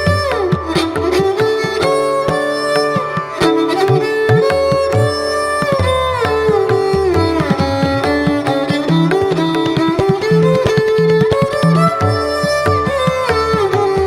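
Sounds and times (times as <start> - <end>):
plucked string melody: 0.0 - 14.0.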